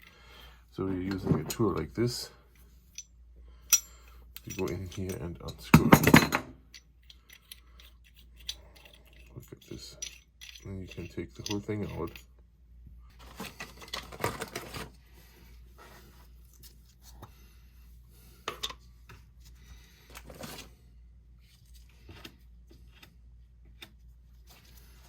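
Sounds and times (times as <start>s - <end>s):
valve parts scraping and clicking: 3.7s - 5.7s, 6.6s - 12.3s.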